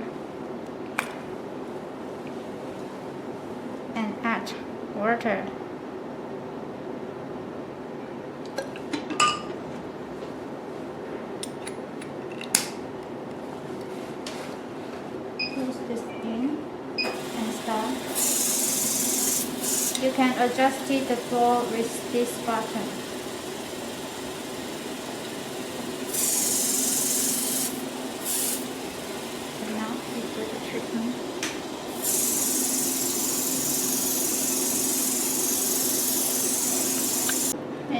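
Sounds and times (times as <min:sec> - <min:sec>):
machine motor humming: 0:17.0 - 0:37.6
spray gun hissing mist: 0:17.2 - 0:37.5.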